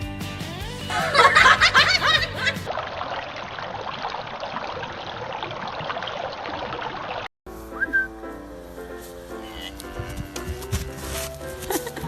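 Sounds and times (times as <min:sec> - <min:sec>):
running water rushing: 0:01.0 - 0:07.3.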